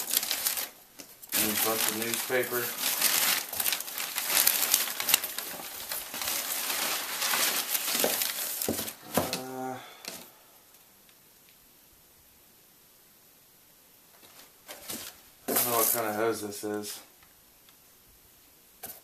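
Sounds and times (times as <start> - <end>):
newspaper and packing peanuts rustling: 0.0 - 10.3, 14.2 - 17.1
brief vocal sound: 9.0 - 10.0.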